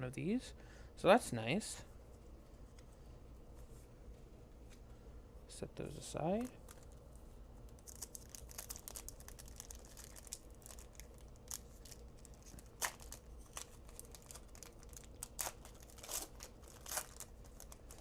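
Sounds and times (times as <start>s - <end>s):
wrapper crinkling and tearing: 7.7s - 18.0s.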